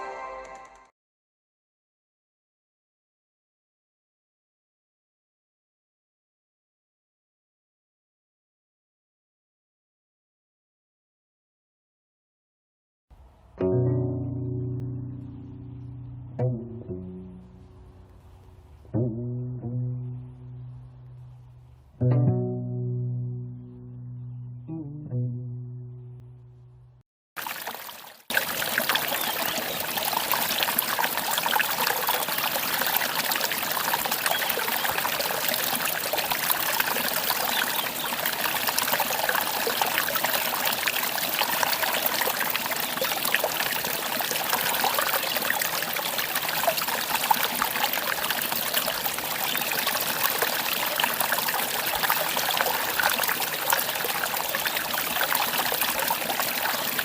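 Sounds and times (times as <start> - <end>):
music: 0.0 - 0.9, 13.6 - 27.0
stream trickling and splashing: 17.4 - 18.9, 27.4 - 57.0.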